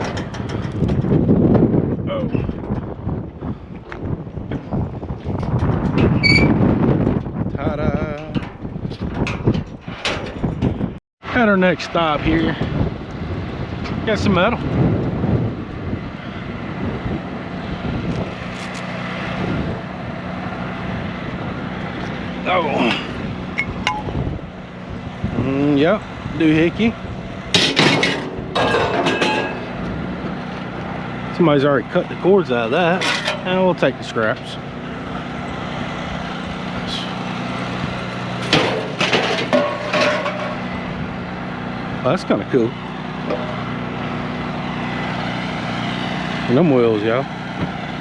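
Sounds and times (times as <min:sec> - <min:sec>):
scrap metal clanking: 0:08.3 - 0:10.9, 0:27.5 - 0:29.8, 0:32.8 - 0:33.8, 0:38.4 - 0:40.7
vehicle engine running: 0:12.0 - 0:48.0.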